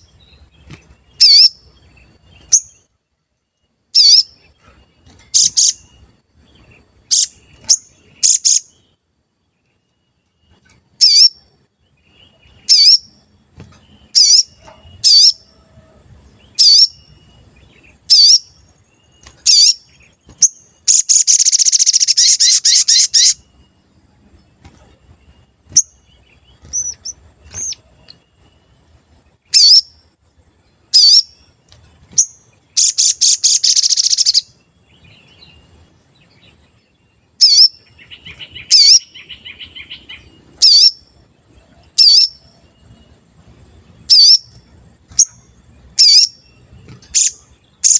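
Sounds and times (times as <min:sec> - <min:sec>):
bird rapid trill: 0:00.0 - 0:02.8, 0:04.0 - 0:08.9, 0:10.5 - 0:11.5, 0:12.3 - 0:15.8, 0:16.4 - 0:23.6, 0:24.5 - 0:28.8, 0:29.5 - 0:30.0, 0:30.9 - 0:35.9, 0:37.3 - 0:41.2, 0:41.9 - 0:43.0, 0:43.8 - 0:47.9
bird chirps: 0:00.0 - 0:47.9
bird chattering trill: 0:01.2 - 0:01.6, 0:04.0 - 0:04.3, 0:05.3 - 0:05.9, 0:07.1 - 0:08.8, 0:11.0 - 0:11.4, 0:12.6 - 0:13.1, 0:14.1 - 0:15.5, 0:18.0 - 0:18.5, 0:19.4 - 0:23.5, 0:32.2 - 0:34.5, 0:37.4 - 0:41.0, 0:44.1 - 0:44.6, 0:45.2 - 0:47.9.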